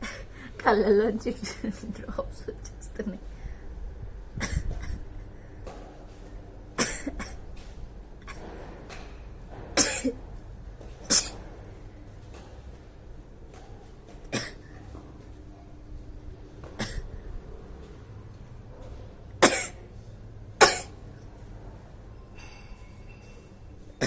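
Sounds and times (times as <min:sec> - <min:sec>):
person coughing: 0:04.4 - 0:05.1, 0:06.8 - 0:07.4, 0:09.8 - 0:10.2, 0:11.1 - 0:11.4, 0:14.3 - 0:14.8, 0:16.8 - 0:17.2, 0:19.4 - 0:19.8, 0:20.6 - 0:21.0
person sneezing: 0:11.1 - 0:11.4.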